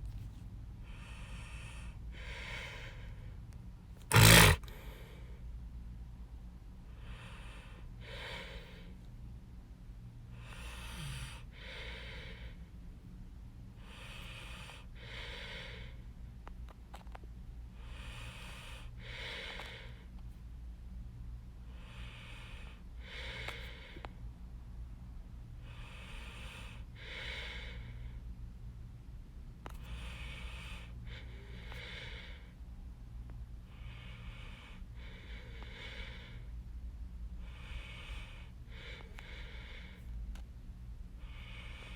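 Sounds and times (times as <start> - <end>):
steady low hum: 0.0 - 41.9
person breathing: 0.8 - 3.4, 4.1 - 5.4, 29.8 - 32.6, 33.7 - 36.6, 37.4 - 40.2, 41.2 - 41.9.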